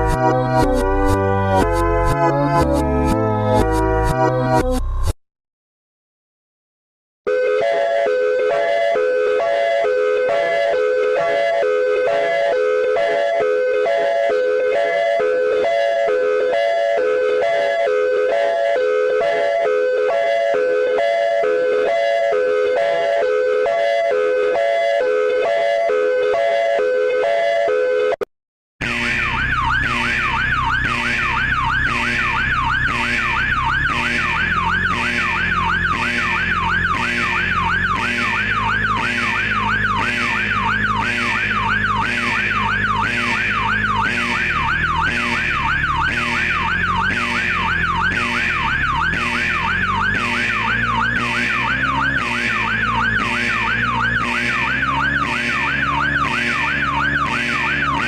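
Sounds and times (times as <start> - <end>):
low drone shifting in pitch: 0.0 - 5.1
sweeping alarm siren tone: 0.0 - 5.1, 7.3 - 28.2, 28.8 - 58.0.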